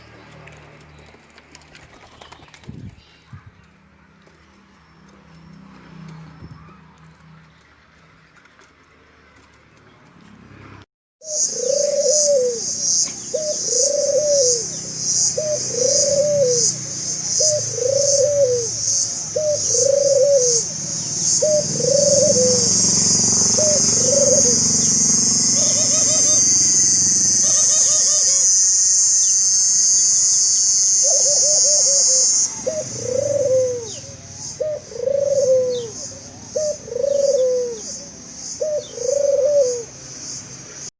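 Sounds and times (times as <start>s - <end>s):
high-pitched insect buzz: 11.2s - 33.9s
dove cooing: 11.2s - 40.1s.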